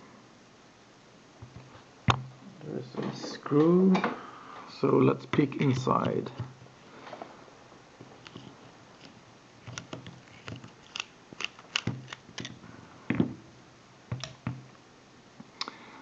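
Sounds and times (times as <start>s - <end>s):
padlock metallic clicks and taps: 14.1s - 14.6s.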